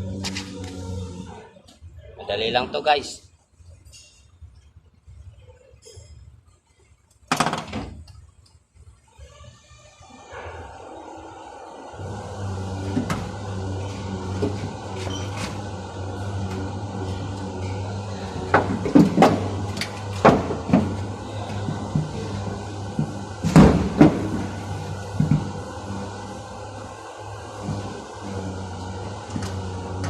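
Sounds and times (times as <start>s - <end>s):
low hum: 9.0s - 30.0s.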